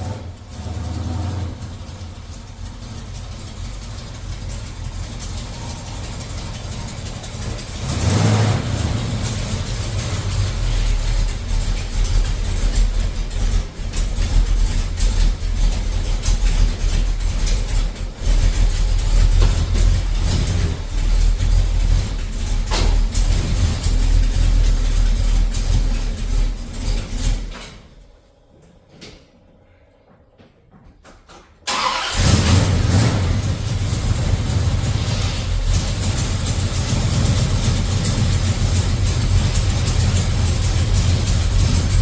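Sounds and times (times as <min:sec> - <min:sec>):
engine low rumble: 0:00.0 - 0:29.7, 0:31.7 - 0:42.0.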